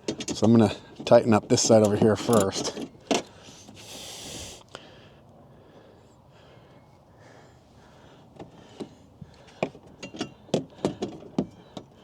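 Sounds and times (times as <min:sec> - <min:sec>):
short hiss: 0:03.8 - 0:04.6.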